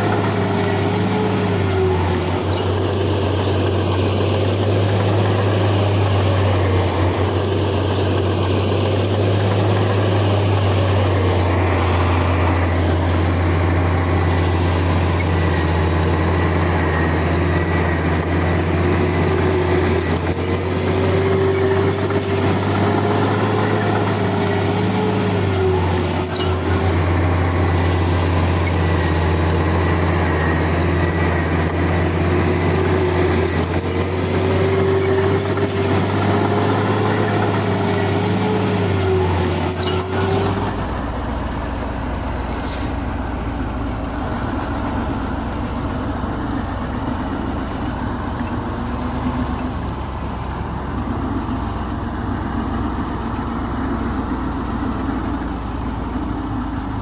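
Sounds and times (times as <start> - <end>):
bulldozer diesel engine running: 0.0 - 57.0
wavering whine: 40.2 - 43.5.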